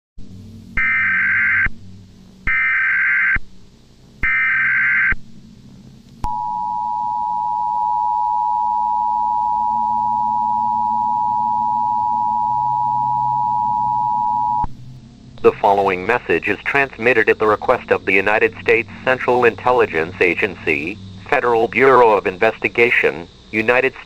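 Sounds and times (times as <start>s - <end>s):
shrill data bursts: 4.2s - 5.2s, 15.4s - 24.0s.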